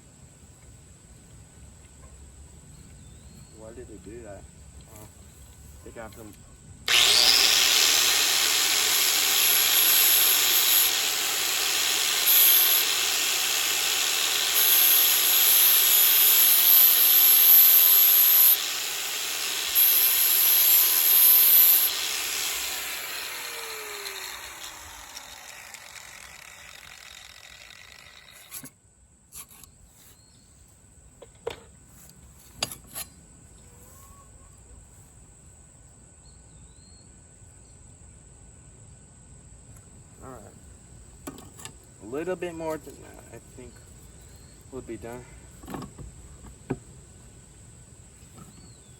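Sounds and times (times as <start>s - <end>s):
motor winding down hum: 6.9s - 28.6s
power sander grinding metal: 6.9s - 28.7s.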